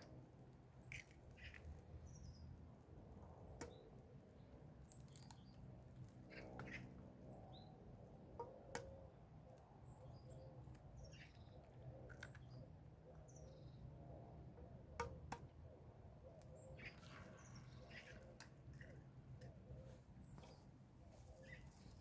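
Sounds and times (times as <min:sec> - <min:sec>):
faint birds chirping: 0:00.7 - 0:14.2, 0:15.6 - 0:22.0.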